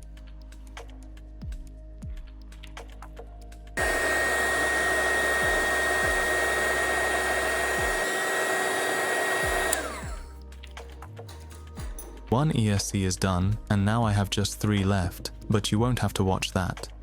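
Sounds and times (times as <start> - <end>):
heat gun fan whining: 3.8 - 10.3.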